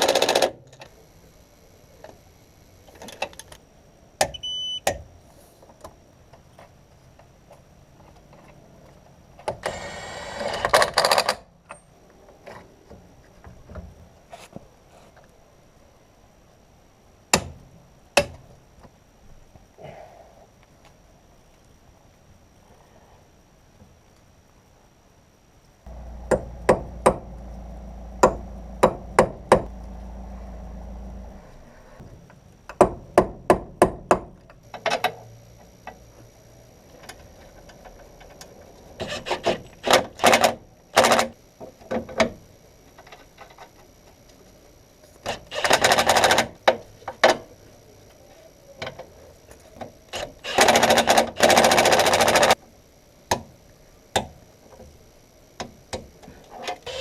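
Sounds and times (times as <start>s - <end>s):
low steady hum: 24.5s - 45.2s
sharp metallic knocks: 25.9s - 29.8s.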